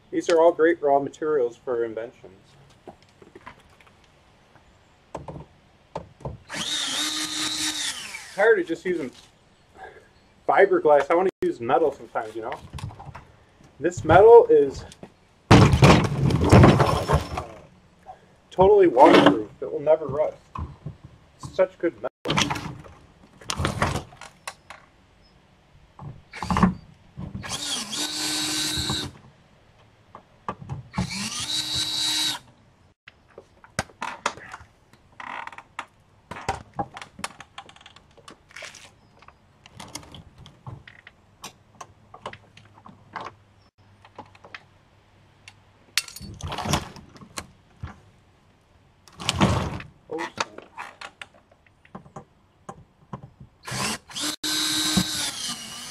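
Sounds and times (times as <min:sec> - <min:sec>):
power drill running: 0:06.5 - 0:08.4, 0:27.4 - 0:29.1, 0:31.0 - 0:32.4, 0:53.6 - 0:55.9.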